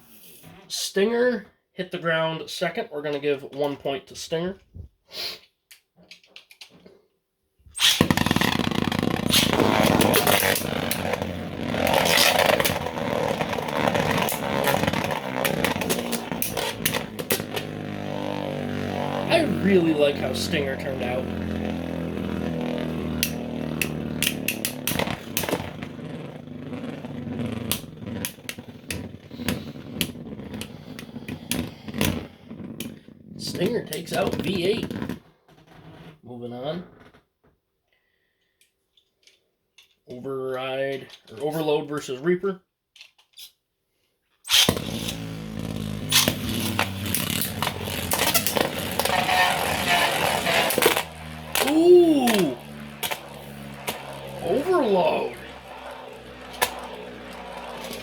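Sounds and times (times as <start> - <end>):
spinning tops whirring: 7.8 - 34.8, 44.5 - 58.0.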